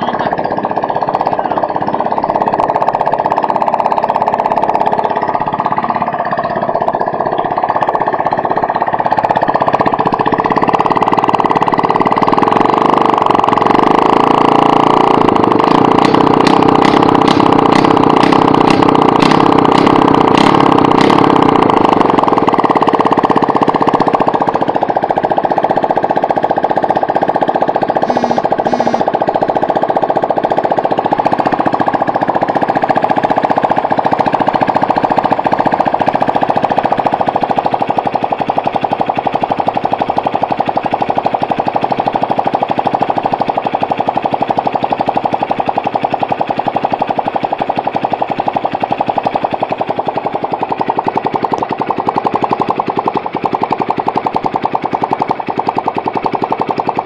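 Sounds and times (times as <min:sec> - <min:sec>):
motorcycle engine running fast: 0:00.0 - 0:57.0.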